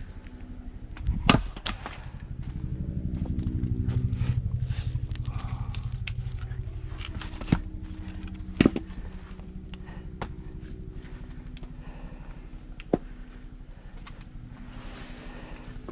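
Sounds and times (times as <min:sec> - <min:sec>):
engine running: 0:00.0 - 0:15.9
axe striking firewood: 0:01.1 - 0:02.0, 0:08.6 - 0:09.0.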